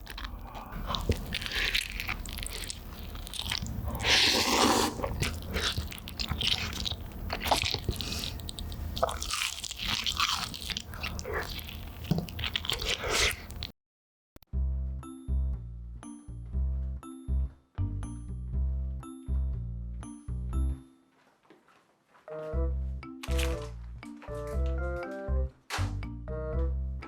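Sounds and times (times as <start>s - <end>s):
crunchy pizza bites: 0.0s - 13.7s, 23.2s - 26.0s
wet chewing: 0.0s - 13.7s, 23.2s - 24.9s.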